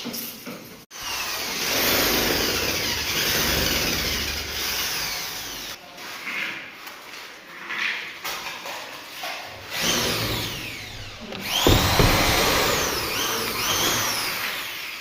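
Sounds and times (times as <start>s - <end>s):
power tool running: 9.8s - 14.8s.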